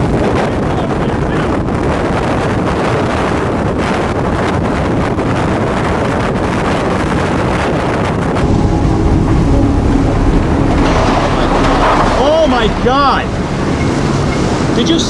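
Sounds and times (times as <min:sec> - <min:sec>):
wind buffeting microphone: 0:00.0 - 0:15.0
steady hum: 0:08.3 - 0:15.0.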